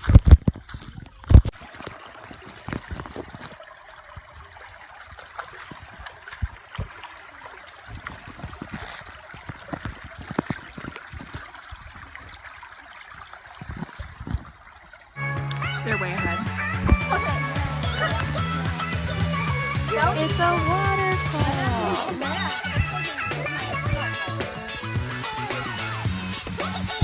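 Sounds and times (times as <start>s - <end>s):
small splashes and clicks: 0.0s - 15.7s
river water flowing: 1.6s - 27.0s.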